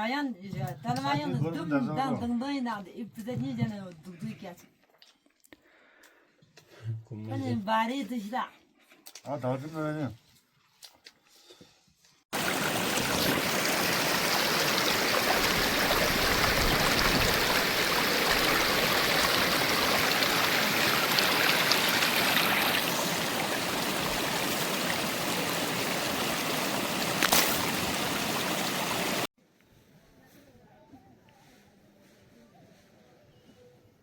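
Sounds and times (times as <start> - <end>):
stream water rushing: 12.3 - 29.3.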